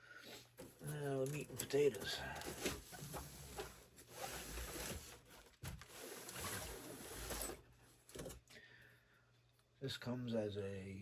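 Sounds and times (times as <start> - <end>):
packaging rustling and scraping: 2.2 - 7.6.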